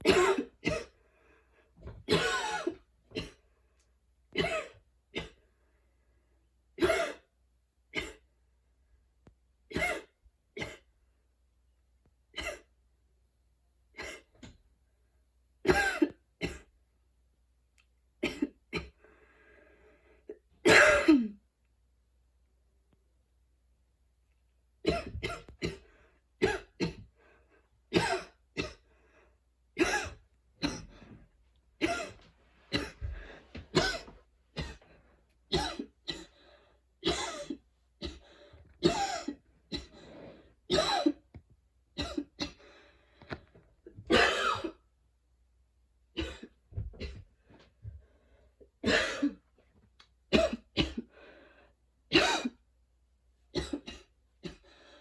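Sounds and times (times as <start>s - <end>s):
woman coughing wheezily: 0.0s - 1.0s, 2.1s - 3.4s, 4.4s - 5.4s, 6.8s - 7.3s, 15.7s - 16.7s, 18.2s - 19.0s, 20.6s - 21.4s, 24.9s - 25.8s, 27.9s - 28.8s, 29.8s - 31.0s, 33.7s - 34.8s, 35.5s - 36.3s, 37.0s - 38.2s, 38.8s - 40.0s, 40.7s - 41.2s, 44.0s - 44.8s, 46.2s - 47.2s, 48.8s - 49.4s, 50.3s - 51.1s, 52.1s - 52.6s, 53.6s - 54.6s.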